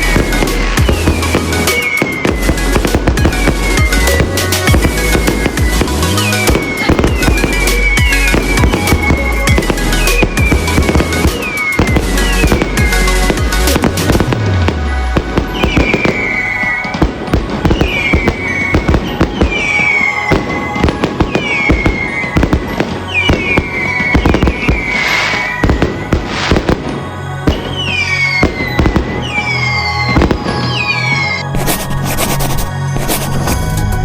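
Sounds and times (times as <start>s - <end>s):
pulsing bass line: 0.0s - 1.7s, 2.3s - 15.9s
fireworks exploding: 0.0s - 33.6s
background music: 0.0s - 34.0s.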